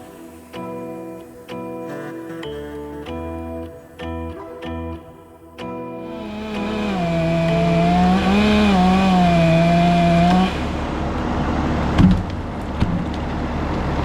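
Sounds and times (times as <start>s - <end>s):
chainsaw running: 6.0s - 11.9s.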